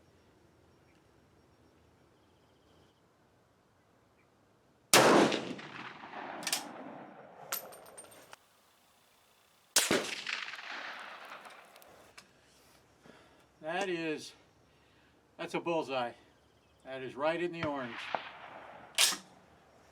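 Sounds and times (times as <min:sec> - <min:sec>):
rifle shots echoing: 0:05.0 - 0:07.9, 0:09.8 - 0:12.0, 0:17.6 - 0:19.5
rifle bolt metallic clacks: 0:06.4 - 0:06.7, 0:19.0 - 0:19.3.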